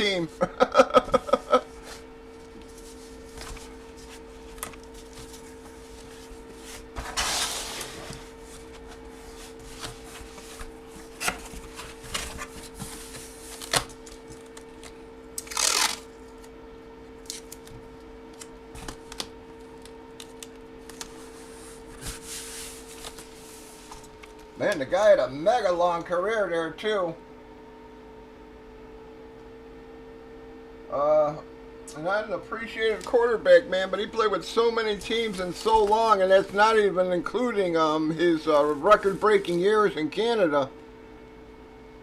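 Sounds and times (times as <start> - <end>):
steady low hum: 0.0 - 42.0
plastic or paper rustles: 1.3 - 16.1, 20.2 - 24.3.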